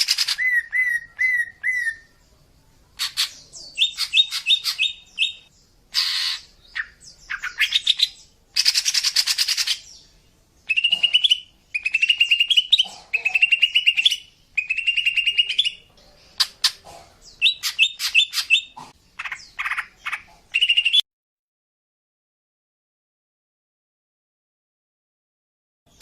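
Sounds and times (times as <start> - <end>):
bird calling: 0.0 - 2.2, 3.0 - 10.0, 10.6 - 21.0.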